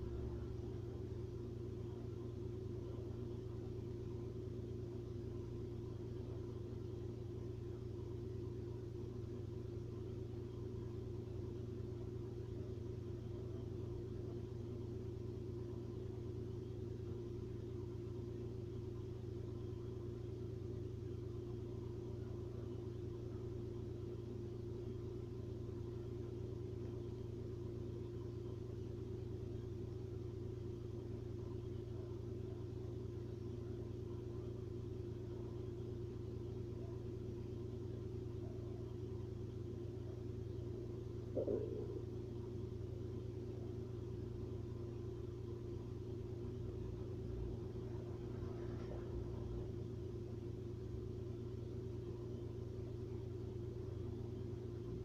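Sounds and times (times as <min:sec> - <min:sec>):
constant hum: 0:00.0 - 0:55.0
steady low rumble: 0:41.0 - 0:45.3, 0:46.2 - 0:51.4.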